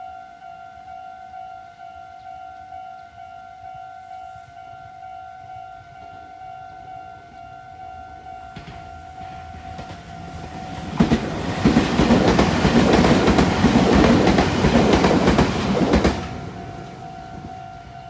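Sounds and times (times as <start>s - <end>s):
level crossing warning bell: 0.0s - 13.4s, 16.0s - 18.0s
train wheels clattering over rails: 8.4s - 17.7s.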